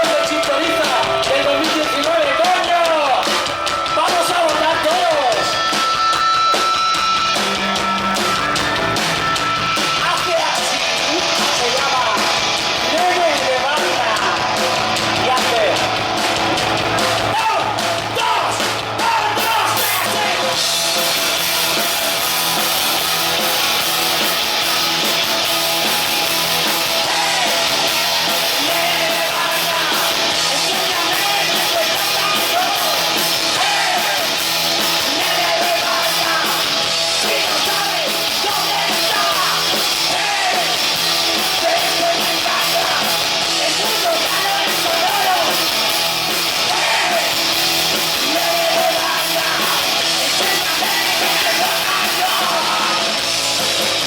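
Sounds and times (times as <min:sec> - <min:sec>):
punk rock band playing: 0:00.0 - 0:54.0
shouted vocals: 0:10.0 - 0:20.7, 0:25.9 - 0:53.2.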